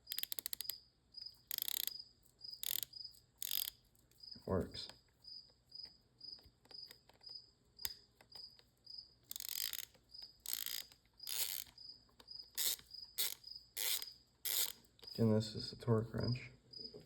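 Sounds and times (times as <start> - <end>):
ratchet clicking: 0.0 - 0.8, 1.4 - 2.0, 2.6 - 3.8, 9.3 - 11.8, 12.5 - 15.2.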